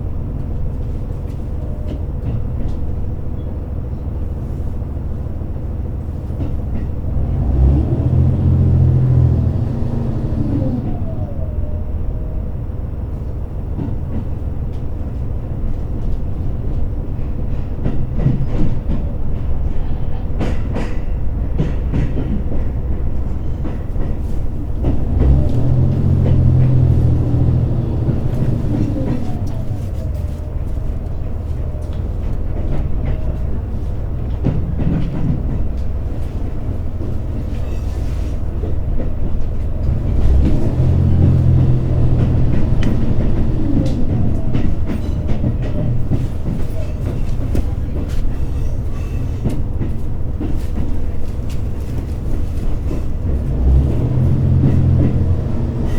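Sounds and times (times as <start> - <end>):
railcar engine and motor drone: 0.0 - 55.9
wheels clicking over rail joints: 13.7 - 55.9.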